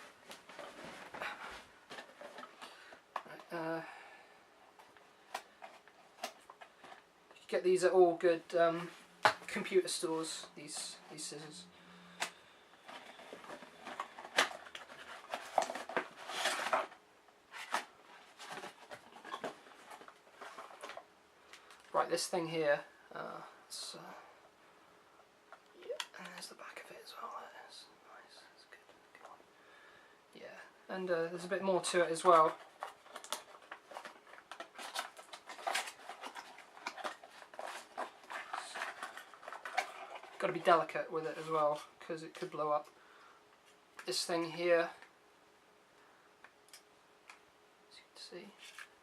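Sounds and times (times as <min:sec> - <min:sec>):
packaging rustling: 0:12.2 - 0:22.0, 0:31.8 - 0:42.5.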